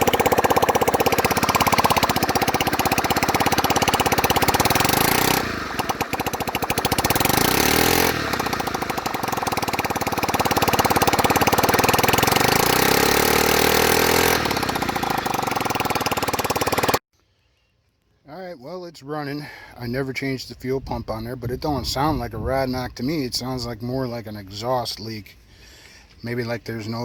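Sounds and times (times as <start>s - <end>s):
scooter engine running: 0.0s - 17.0s.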